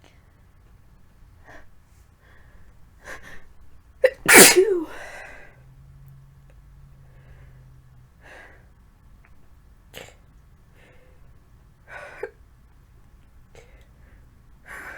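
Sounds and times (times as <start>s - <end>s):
woman sneezing: 4.0s - 5.0s.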